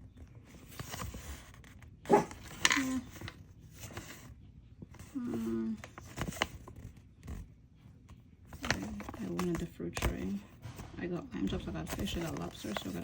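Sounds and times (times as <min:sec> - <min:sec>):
soft plastic crinkling: 0:00.0 - 0:13.0.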